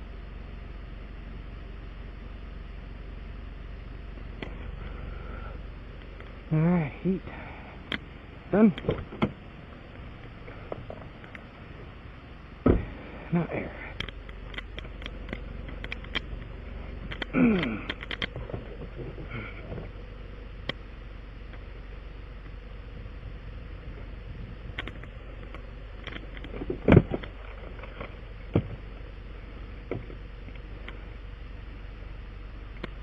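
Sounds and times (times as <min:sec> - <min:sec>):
steady background noise: 0:00.0 - 0:33.0
loud thump: 0:12.6 - 0:13.0.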